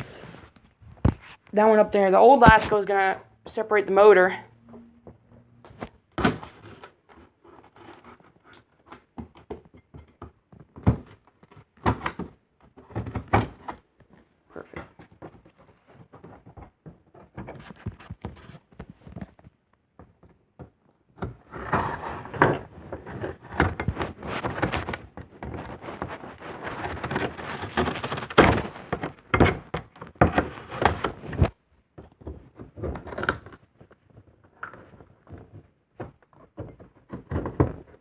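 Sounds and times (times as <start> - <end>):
cardboard scraping and rustling: 0.0 - 1.5, 5.7 - 9.2, 21.2 - 38.0.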